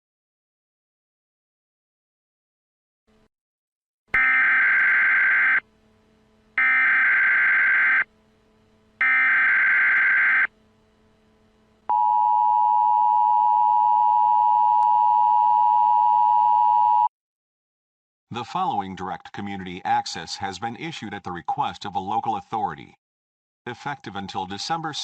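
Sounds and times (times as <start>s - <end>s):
screeching digital data tones: 6.6s - 8.1s, 9.0s - 10.5s.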